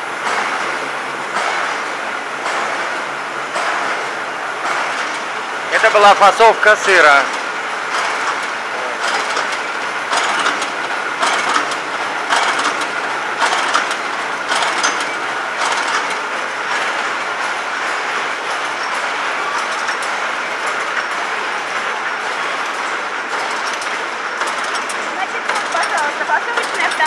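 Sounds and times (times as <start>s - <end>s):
machine clacking: 0.0s - 27.0s
packing machine whirring: 0.0s - 27.0s.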